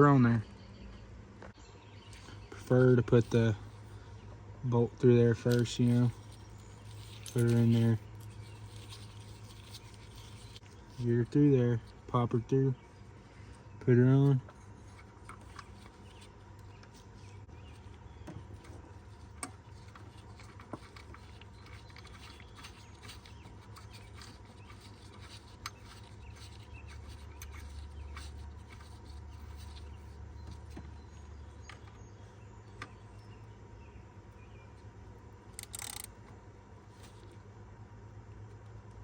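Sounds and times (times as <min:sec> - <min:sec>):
steady low hum: 0:00.0 - 0:39.0
metallic clicks and scrapes: 0:05.4 - 0:12.1, 0:14.4 - 0:30.8, 0:35.5 - 0:36.2.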